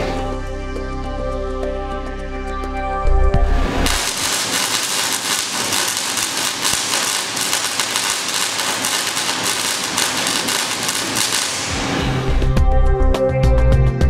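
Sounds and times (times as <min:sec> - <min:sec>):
welding machine crackling sputter: 0:03.9 - 0:12.2.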